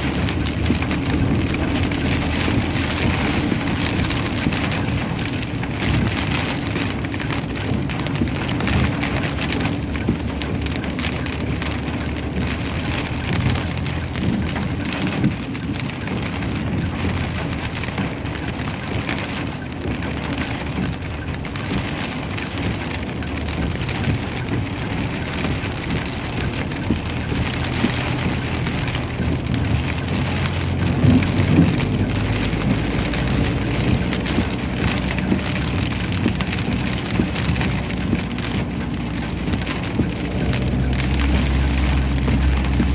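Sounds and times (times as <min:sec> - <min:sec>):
heavy hail and rain pelting: 0:00.0 - 0:42.9.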